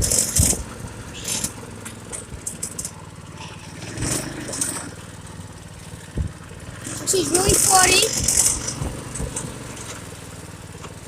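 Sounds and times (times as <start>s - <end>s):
go-kart engine running: 0.0s - 11.0s
thumps: 7.2s - 10.0s.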